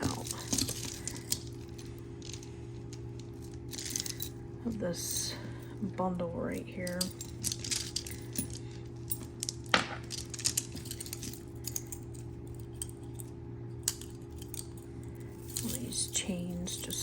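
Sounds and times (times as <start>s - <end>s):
metal chains clinking and jingling: 0.0s - 4.4s, 6.9s - 13.2s.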